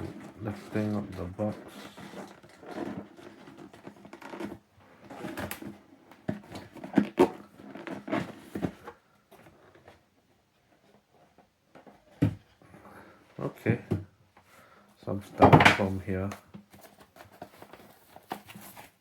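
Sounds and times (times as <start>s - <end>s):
cardboard packaging rustling: 0.0s - 10.0s, 15.6s - 19.0s.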